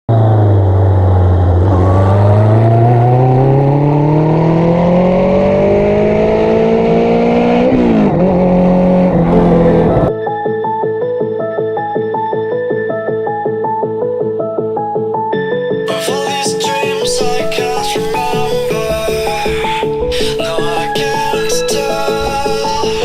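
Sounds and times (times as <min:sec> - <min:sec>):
car engine accelerating: 0:00.1 - 0:10.1
music: 0:09.3 - 0:23.0.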